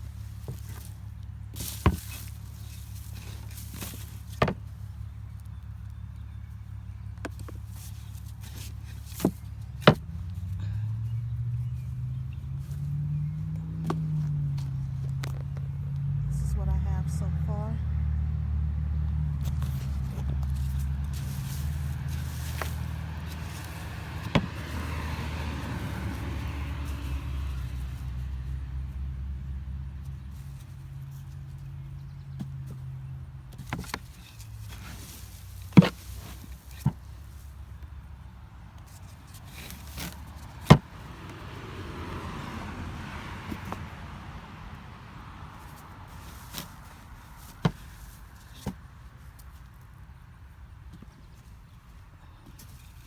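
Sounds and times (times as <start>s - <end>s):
light rustle: 0.0s - 6.7s, 19.4s - 28.6s, 33.5s - 38.1s, 45.5s - 50.1s.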